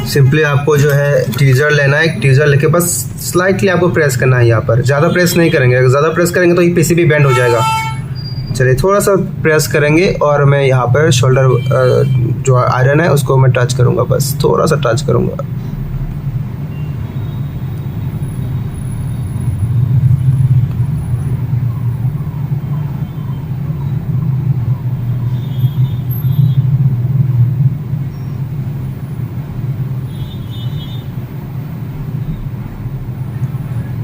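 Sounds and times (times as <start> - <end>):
low rumble: 17.5 - 30.1.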